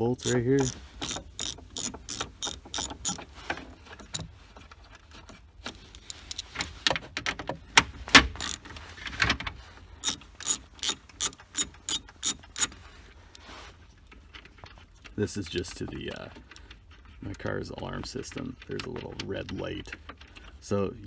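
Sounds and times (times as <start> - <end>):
socket ratchet clicking: 0.2 - 3.3, 5.7 - 6.6, 8.2 - 8.7, 10.0 - 12.8.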